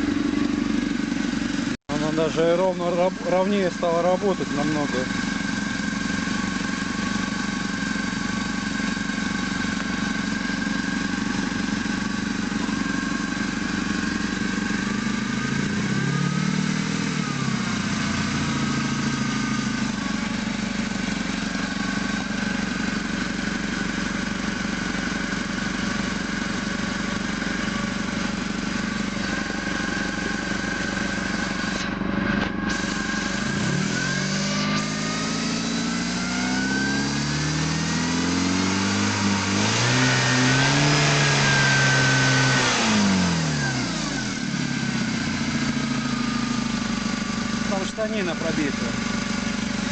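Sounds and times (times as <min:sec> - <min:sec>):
petrol engine idling and revving: 0:00.0 - 0:49.9.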